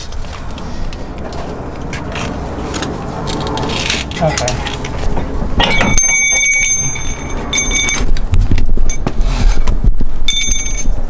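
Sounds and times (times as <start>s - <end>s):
metal parts ringing: 5.6s - 8.2s, 10.3s - 11.0s.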